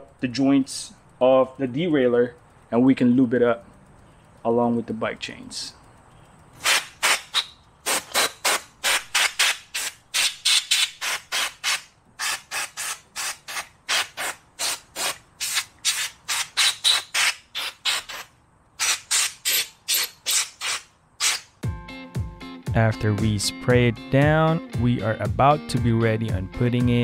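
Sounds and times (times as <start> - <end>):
compressed air hissing blasts: 6.5 - 21.6.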